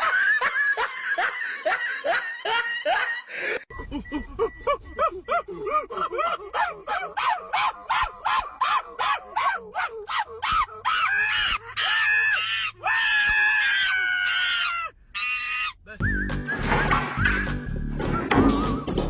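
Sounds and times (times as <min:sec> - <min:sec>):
animal crying: 0:05.0 - 0:15.9.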